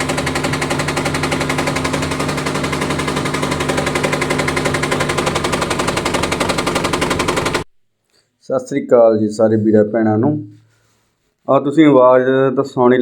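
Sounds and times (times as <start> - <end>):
washing machine knocking: 0.0 - 7.6.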